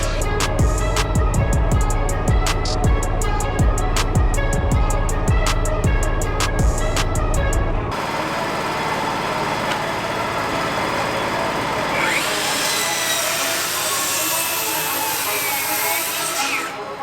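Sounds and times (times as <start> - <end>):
power saw cutting wood: 7.9 - 17.0.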